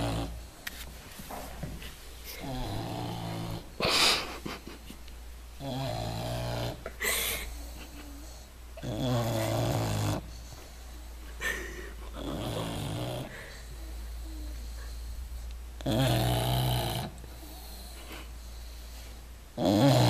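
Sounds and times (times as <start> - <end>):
dog snoring: 0.0 - 0.5, 2.3 - 4.2, 5.6 - 11.1, 12.1 - 19.0, 19.6 - 20.0.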